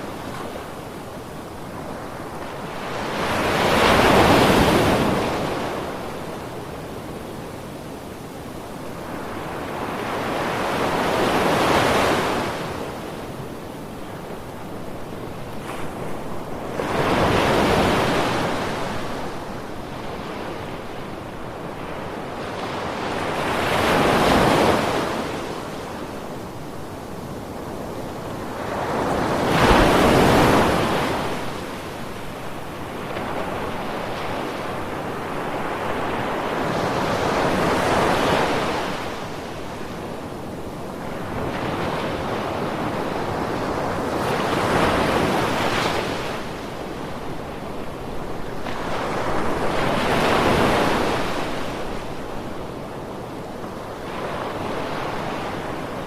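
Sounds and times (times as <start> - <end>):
ocean waves breaking on shore: 0.0 - 56.0.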